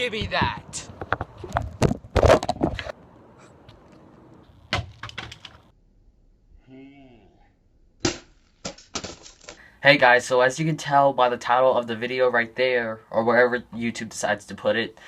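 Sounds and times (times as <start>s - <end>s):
knocks and rattling clatter: 0.0s - 2.9s, 4.7s - 5.7s
short vocal sound: 6.6s - 7.6s.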